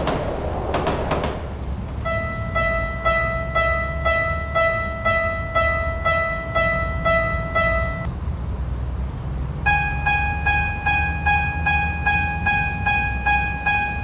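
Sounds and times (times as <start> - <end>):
steady low rumble: 0.0 - 5.2
level crossing warning bell: 2.0 - 8.1, 9.7 - 14.0.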